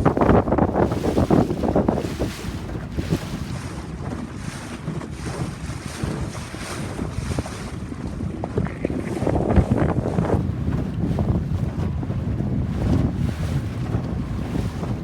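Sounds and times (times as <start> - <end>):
waves washing: 0.0 - 15.0
wind buffeting microphone: 0.0 - 15.0.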